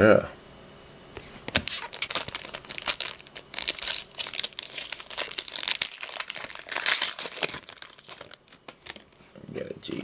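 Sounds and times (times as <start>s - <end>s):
card pack wrapper crinkling: 1.5s - 9.2s.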